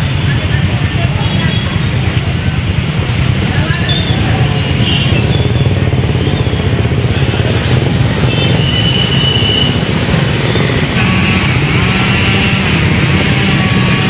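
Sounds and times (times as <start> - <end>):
road traffic noise: 0.0 - 14.0
high steady tone: 11.0 - 14.0.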